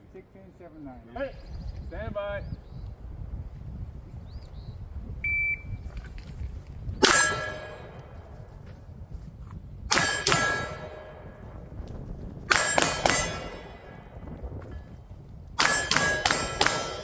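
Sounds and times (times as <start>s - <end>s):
shot timer beep: 5.3s - 5.8s
pistol shots: 7.0s - 8.3s, 9.9s - 11.5s, 12.5s - 14.3s, 15.6s - 17.0s
bullets ringing steel target: 7.0s - 8.6s, 9.9s - 11.7s, 12.5s - 14.9s, 15.6s - 17.0s.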